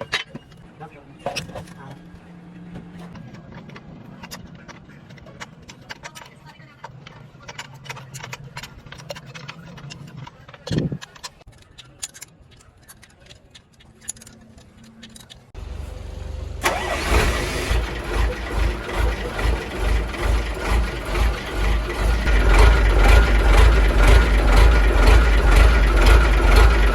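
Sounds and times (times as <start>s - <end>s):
truck diesel engine running: 15.6s - 26.9s.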